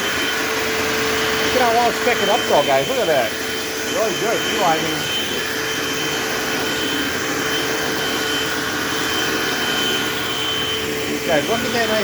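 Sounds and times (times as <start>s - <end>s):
vacuum cleaner running: 0.0s - 12.0s.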